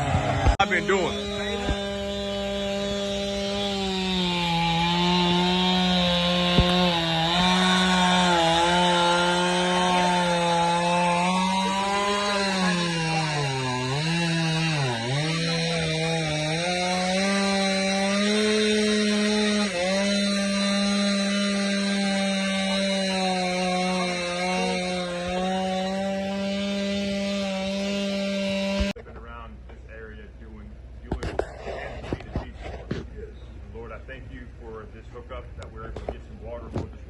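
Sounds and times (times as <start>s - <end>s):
chainsaw cutting wood: 0.0s - 29.4s, 31.1s - 33.2s.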